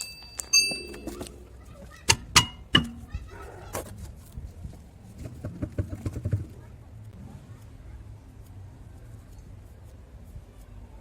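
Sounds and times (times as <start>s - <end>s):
metallic knocks and clinks: 0.0s - 1.4s.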